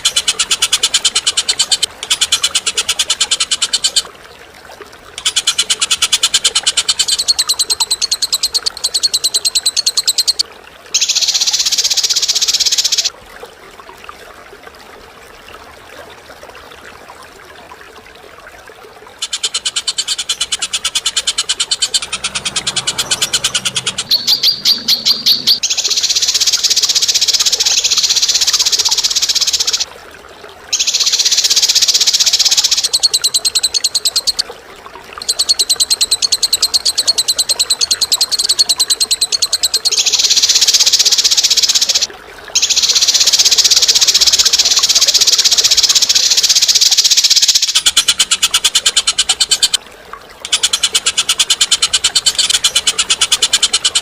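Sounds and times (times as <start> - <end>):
bird trilling: 5.2 - 10.4, 11.0 - 13.1, 19.2 - 29.9, 35.2 - 49.8, 50.5 - 54.0
bird harsh chattering: 19.2 - 29.8.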